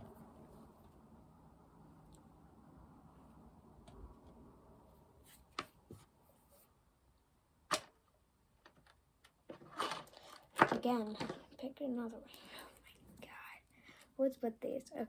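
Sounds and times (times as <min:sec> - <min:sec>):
fidget toys rustling: 0:09.5 - 0:11.6.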